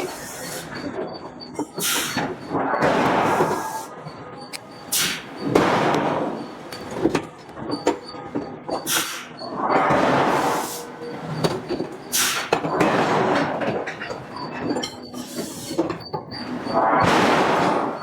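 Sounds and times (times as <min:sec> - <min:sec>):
forging hammer blows: 0:01.7 - 0:18.0.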